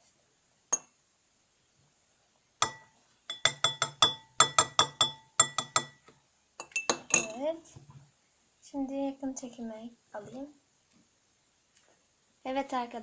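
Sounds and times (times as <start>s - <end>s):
spoon clinking against a bowl: 2.6s - 6.0s, 6.6s - 7.4s.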